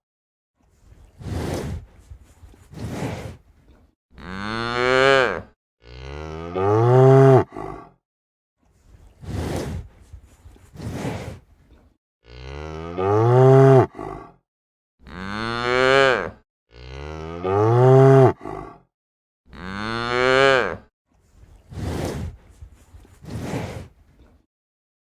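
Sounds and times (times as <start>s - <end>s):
cow mooing: 4.2s - 7.6s, 12.2s - 14.0s, 15.1s - 18.6s, 19.5s - 20.8s.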